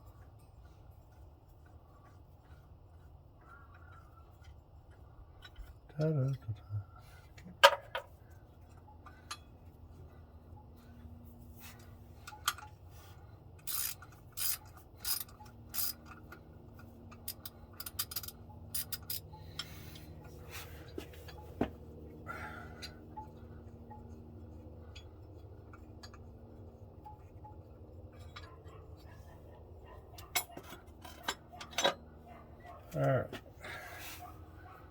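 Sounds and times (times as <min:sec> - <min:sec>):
steady low hum: 0:00.0 - 0:34.9
metal tools clinking and scraping: 0:07.3 - 0:21.8, 0:22.4 - 0:34.8.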